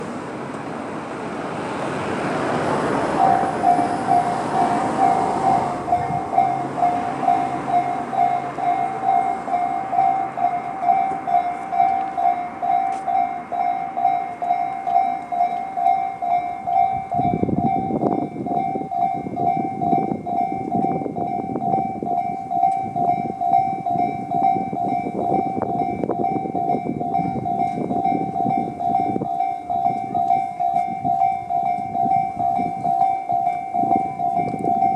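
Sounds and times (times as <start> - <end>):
rushing noise: 0.0 - 20.2
level crossing electronic bell ringing: 3.2 - 34.9.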